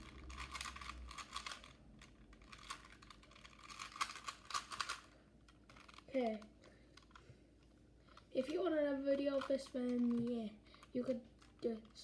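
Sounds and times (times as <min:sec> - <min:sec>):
puzzle cube clicking as twisted: 0:00.0 - 0:07.2.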